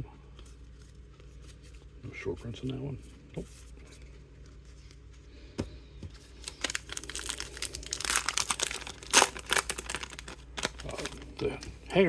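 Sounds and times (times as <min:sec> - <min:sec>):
wrapper crinkling and tearing: 0:06.3 - 0:11.7.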